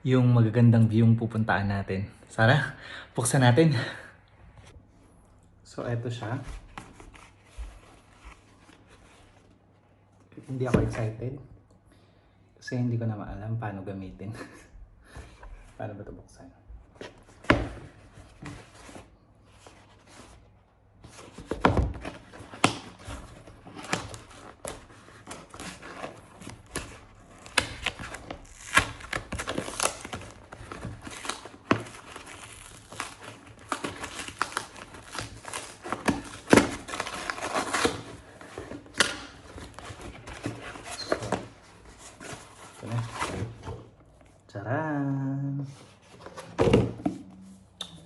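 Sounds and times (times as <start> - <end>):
packaging crinkling and tearing: 22.6 - 41.3.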